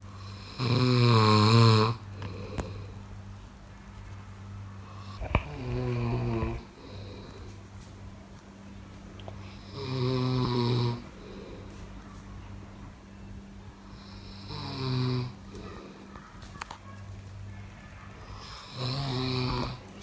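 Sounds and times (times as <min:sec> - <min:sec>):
person snoring: 0:00.2 - 0:03.0, 0:04.9 - 0:07.6, 0:09.4 - 0:11.7, 0:13.9 - 0:16.0, 0:18.4 - 0:19.8
soft breathing: 0:02.0 - 0:03.4, 0:04.8 - 0:08.2, 0:09.3 - 0:13.0, 0:15.3 - 0:16.6.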